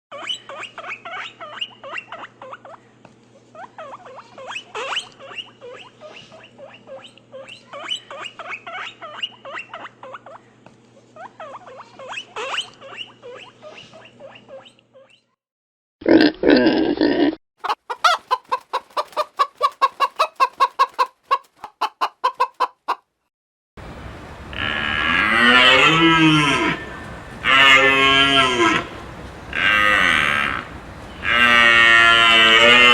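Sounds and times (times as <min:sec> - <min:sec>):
chickens clucking: 0:17.6 - 0:23.1, 0:24.0 - 0:32.9
low hum: 0:23.8 - 0:31.6
loud animal call: 0:24.3 - 0:32.9.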